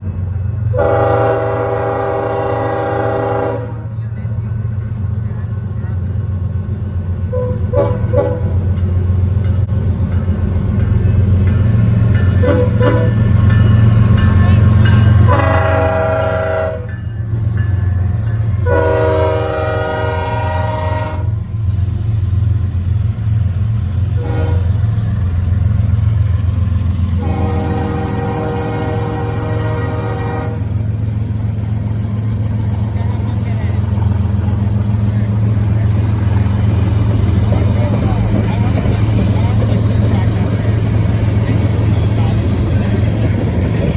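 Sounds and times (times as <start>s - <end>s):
diesel engine rumble: 0.0s - 43.9s
passing train: 0.0s - 43.9s
locomotive air horn chord: 0.7s - 3.8s, 12.4s - 13.2s, 15.2s - 16.9s, 18.6s - 21.4s, 24.2s - 24.8s, 27.2s - 30.6s.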